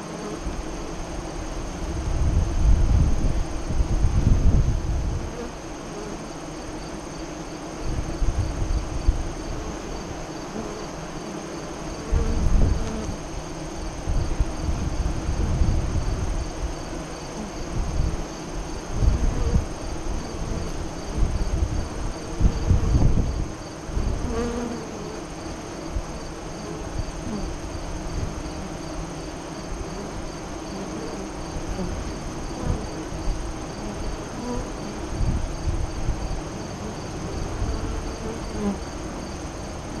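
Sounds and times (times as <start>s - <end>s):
bees buzzing: 0.0s - 40.0s
high-pitched insect trill: 0.0s - 40.0s
wind rumble on microphone: 1.4s - 5.6s, 7.8s - 10.2s, 12.0s - 25.1s, 25.8s - 28.7s, 31.4s - 38.8s.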